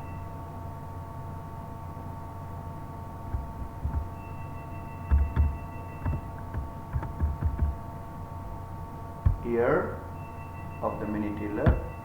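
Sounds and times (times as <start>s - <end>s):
steady electrical hum: 0.0s - 12.0s
keyboard keystrokes: 3.3s - 4.2s, 5.1s - 7.8s, 9.3s - 9.5s.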